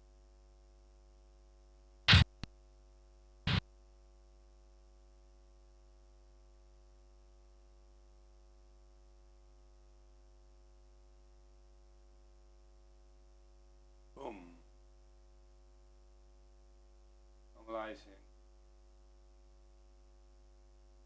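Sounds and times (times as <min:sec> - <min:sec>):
electrical mains hum: 0:02.1 - 0:02.5
explosion boom sound effect: 0:02.1 - 0:02.5.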